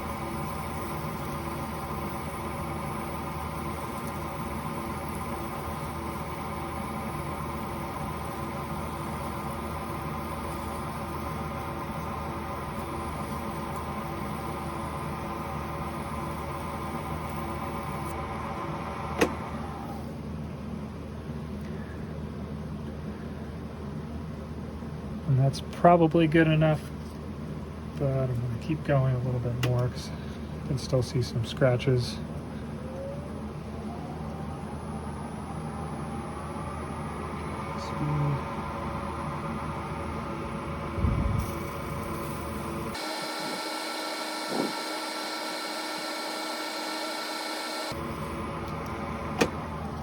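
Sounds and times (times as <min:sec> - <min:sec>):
lathe motor hum: 0:00.0 - 0:20.2, 0:33.4 - 0:50.0.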